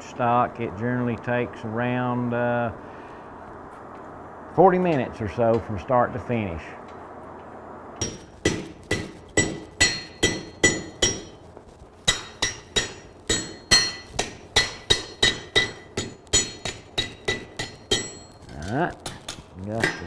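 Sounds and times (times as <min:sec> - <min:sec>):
hammer striking steel on anvil: 0:08.0 - 0:11.4, 0:12.1 - 0:20.0.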